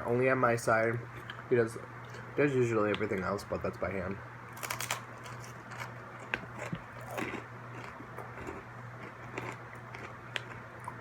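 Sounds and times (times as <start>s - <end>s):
steady low hum: 0.0s - 11.0s
chewing crunchy pretzels: 4.5s - 11.0s.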